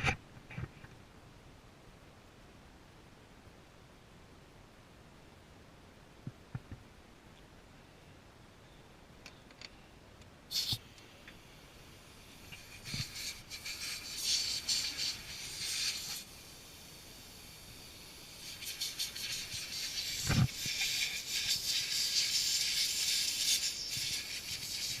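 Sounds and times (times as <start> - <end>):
rattling hiss: 10.5 - 25.0.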